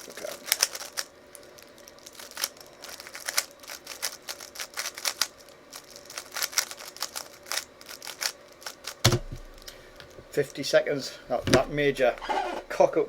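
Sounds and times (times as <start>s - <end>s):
puzzle cube clicking and rattling: 0.0s - 10.2s.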